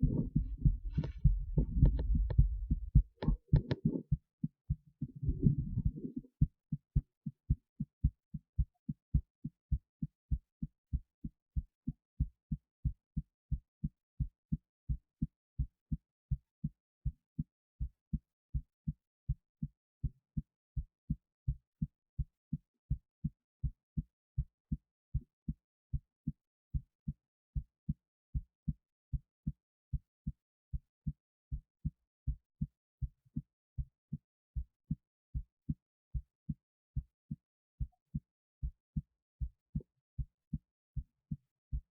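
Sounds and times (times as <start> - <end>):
heartbeat thumps: 0.0 - 8.8.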